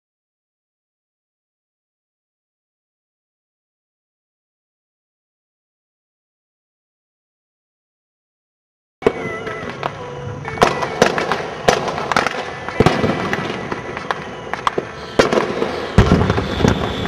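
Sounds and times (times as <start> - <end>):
fireworks bursting: 9.0 - 17.0
deep firework boom: 15.1 - 17.0.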